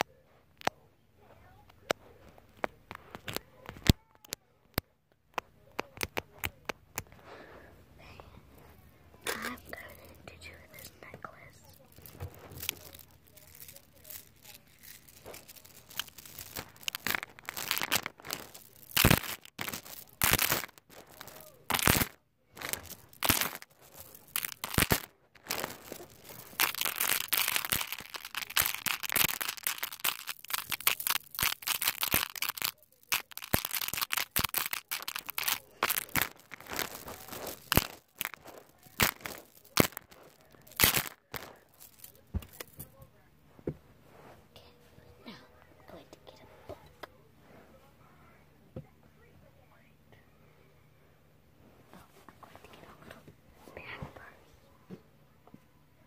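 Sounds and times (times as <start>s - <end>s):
crinkling and crackling: 0.0s - 47.2s, 51.6s - 55.6s
steady rustling: 6.6s - 45.2s.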